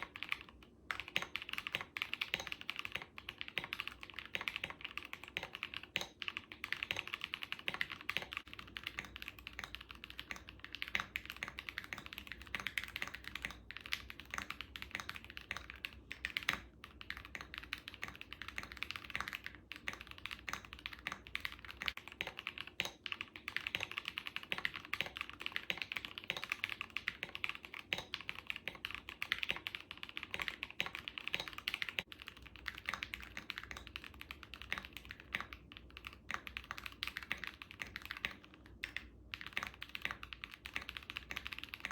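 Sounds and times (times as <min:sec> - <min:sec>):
mechanical keyboard typing: 0:00.0 - 0:41.9.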